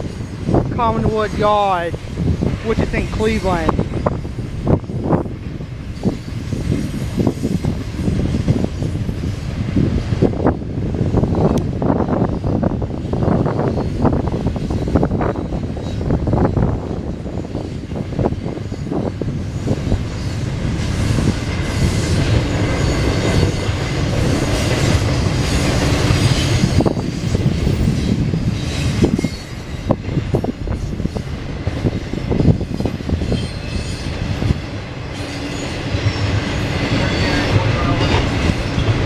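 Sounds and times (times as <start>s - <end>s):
train wheels rumbling on rail: 0.0s - 39.0s
flange squeal: 18.6s - 31.0s, 32.1s - 34.4s, 35.1s - 39.0s.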